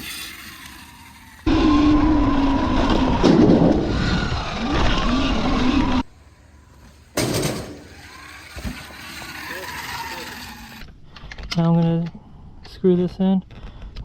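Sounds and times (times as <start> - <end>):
tyre noise: 0.0 - 10.9
wind noise: 1.4 - 6.1
electric motor whining: 7.9 - 10.8.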